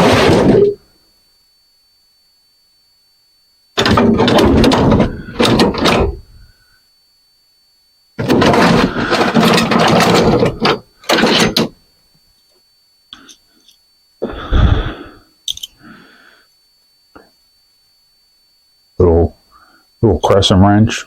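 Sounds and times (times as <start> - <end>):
loud clunk: 0.0 - 0.8, 3.8 - 6.4, 8.2 - 11.8.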